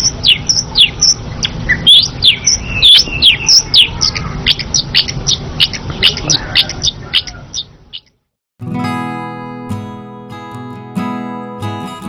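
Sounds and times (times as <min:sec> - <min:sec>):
bird singing high chirps: 0:00.0 - 0:08.2.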